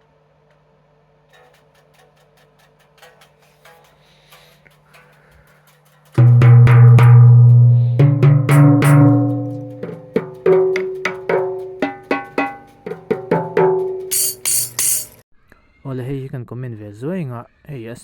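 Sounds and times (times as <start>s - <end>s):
timbales and bongos struck: 6.2s - 15.2s.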